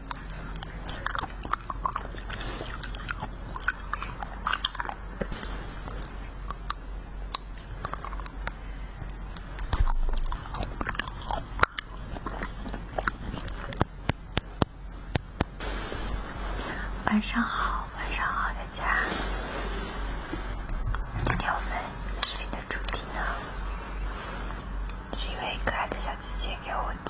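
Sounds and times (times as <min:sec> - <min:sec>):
chewing wax candy: 0:00.0 - 0:15.6.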